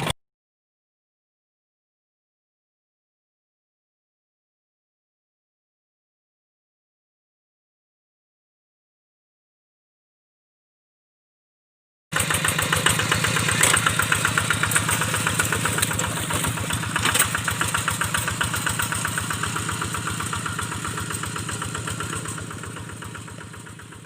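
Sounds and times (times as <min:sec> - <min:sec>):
diesel engine running: 0:12.2 - 0:24.0.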